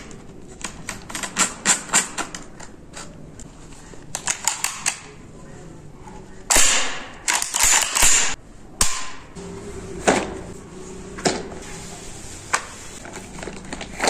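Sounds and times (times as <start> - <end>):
sharp metallic clicks: 6.5 - 9.2.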